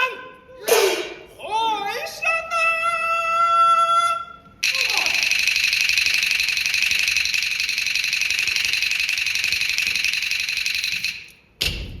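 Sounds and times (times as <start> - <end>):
heavy percussion strike: 11.6 - 12.0.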